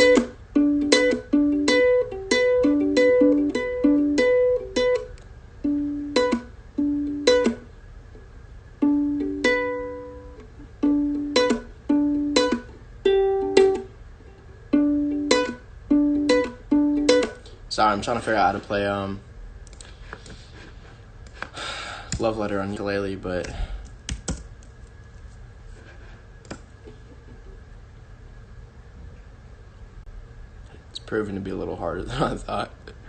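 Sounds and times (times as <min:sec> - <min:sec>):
ukulele strummed chords: 0:00.0 - 0:07.7, 0:08.8 - 0:17.5.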